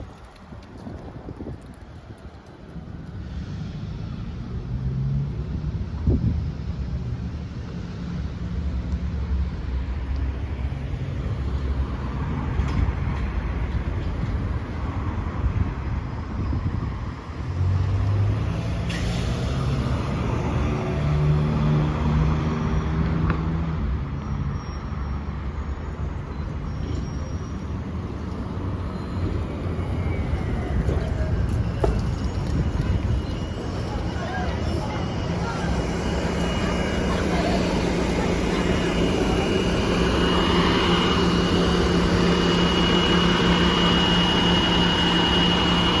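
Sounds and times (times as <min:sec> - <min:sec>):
bus engine droning: 0:00.2 - 0:46.0
high-pitched whine: 0:24.1 - 0:46.0.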